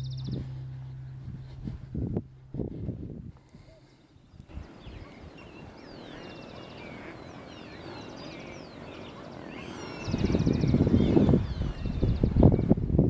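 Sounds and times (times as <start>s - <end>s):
small birds chirping and trilling: 0.0s - 0.8s, 3.5s - 12.8s
low outdoor background: 0.0s - 13.0s.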